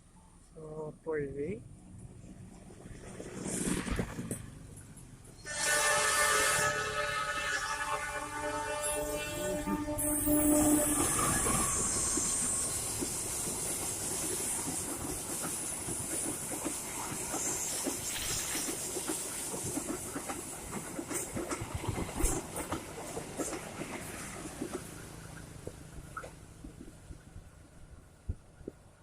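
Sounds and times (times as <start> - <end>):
train cars rushing past: 1.6 - 29.0
train horn: 5.4 - 12.6
wheels clicking over rail joints: 10.8 - 29.0.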